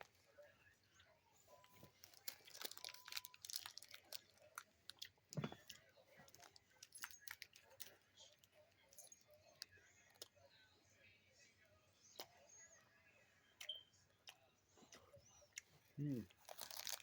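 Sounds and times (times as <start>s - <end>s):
person chewing: 1.6s - 10.5s, 13.6s - 17.0s.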